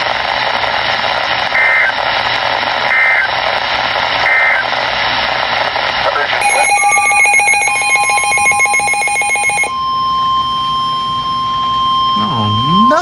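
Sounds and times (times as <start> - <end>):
radio static: 0.0 - 9.6
two-tone digital data bursts: 1.6 - 2.0, 2.9 - 3.3, 4.3 - 4.7, 6.4 - 9.7.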